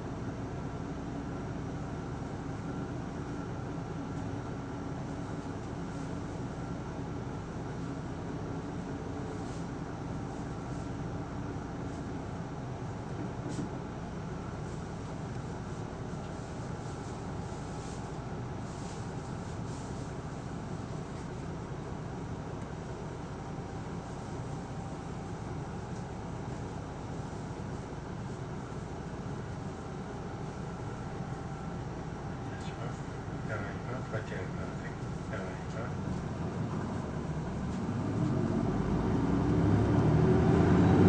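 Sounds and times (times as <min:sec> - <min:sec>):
bus diesel engine running: 0:00.0 - 0:41.0
road noise: 0:33.5 - 0:41.0.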